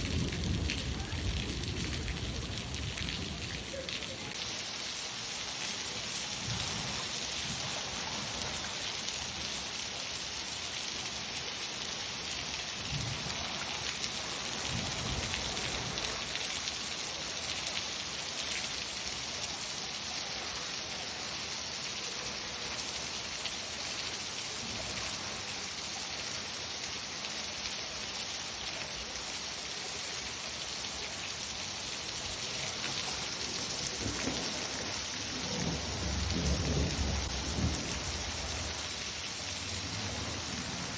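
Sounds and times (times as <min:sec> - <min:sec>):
distant thunder rumbling: 0:00.0 - 0:03.6, 0:32.7 - 0:40.9
heavy rain pattering: 0:00.0 - 0:40.9.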